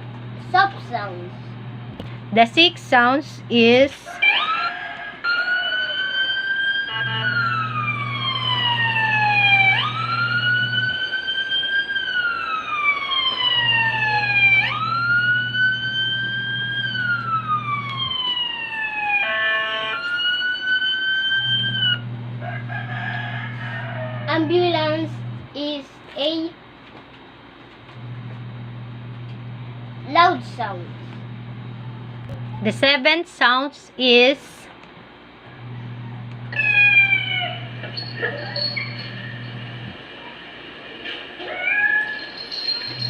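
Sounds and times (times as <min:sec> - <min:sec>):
ambulance siren wailing: 0:04.0 - 0:24.5, 0:35.6 - 0:43.0
horn blast: 0:06.8 - 0:08.6, 0:19.2 - 0:20.1.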